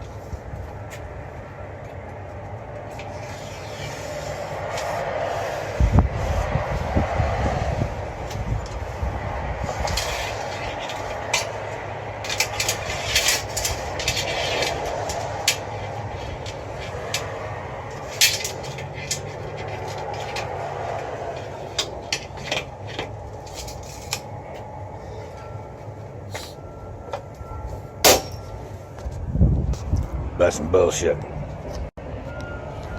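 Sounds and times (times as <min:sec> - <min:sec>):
steady low rumble: 0:00.0 - 0:32.9
metallic clicks and scrapes: 0:02.4 - 0:06.8, 0:08.2 - 0:25.5.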